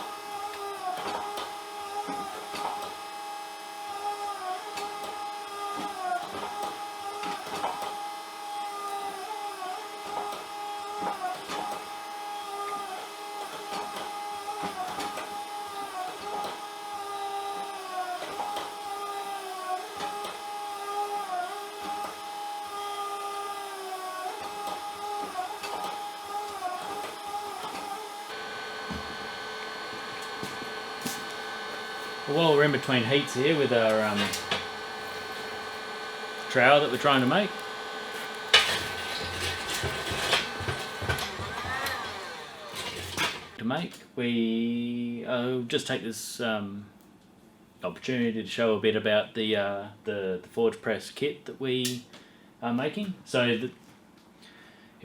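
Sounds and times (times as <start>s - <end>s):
hydraulic pump whine: 0.0s - 43.6s.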